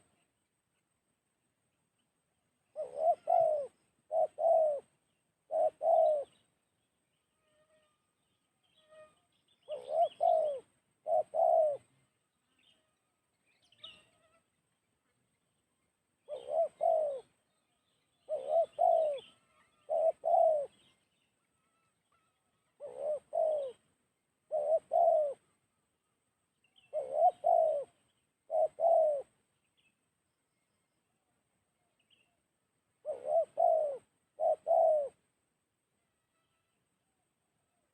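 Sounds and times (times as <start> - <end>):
dove cooing: 2.7 - 6.5, 9.6 - 11.9, 16.2 - 17.4, 18.2 - 20.9, 22.8 - 25.5, 26.8 - 29.4, 33.0 - 35.2.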